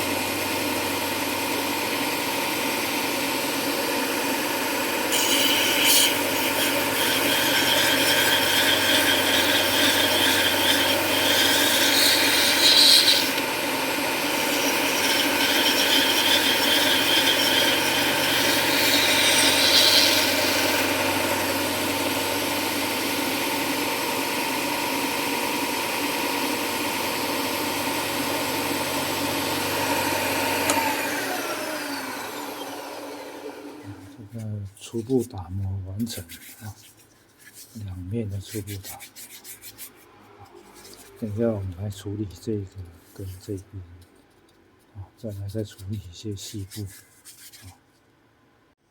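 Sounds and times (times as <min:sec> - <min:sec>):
rotary tool motor whine: 0:04.4 - 0:23.0, 0:29.2 - 0:34.1.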